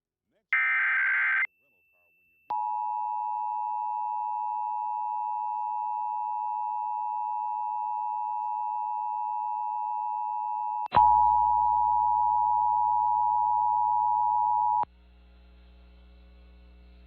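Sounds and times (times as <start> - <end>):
mains hum: 11.0 - 17.0.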